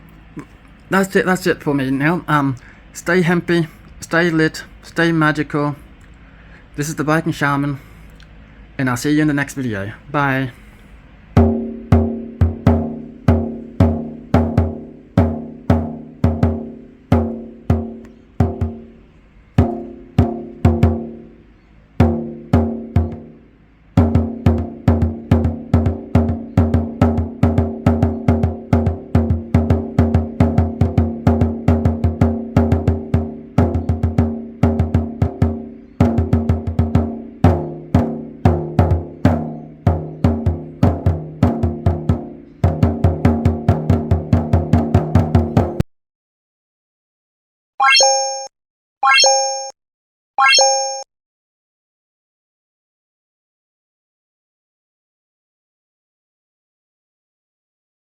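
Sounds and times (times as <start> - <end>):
hand drum beating: 11.4 - 19.0, 19.6 - 21.3, 22.0 - 23.4, 24.0 - 45.8.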